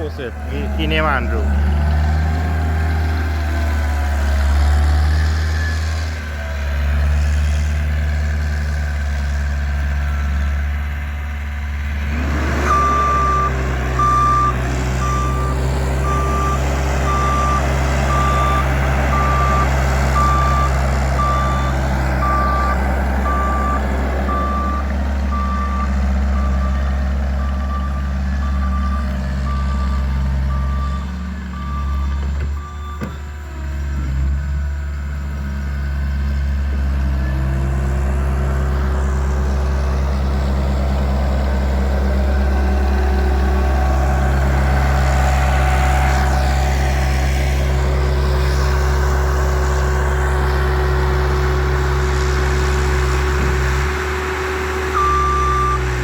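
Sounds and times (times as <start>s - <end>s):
diesel engine running and revving: 0.0s - 56.0s
reversing alarm beeping: 12.6s - 33.4s, 54.8s - 56.0s.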